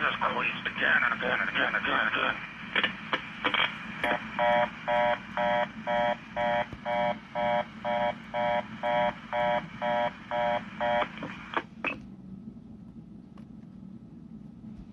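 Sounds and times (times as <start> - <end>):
telephone busy tone beeps: 4.1 - 11.1.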